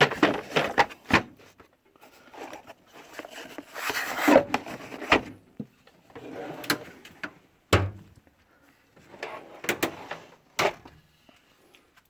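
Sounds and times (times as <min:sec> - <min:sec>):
metal drawer sliding with rattle: 0:06.2 - 0:07.0, 0:09.0 - 0:10.9
drawer knocking shut: 0:07.7 - 0:08.0.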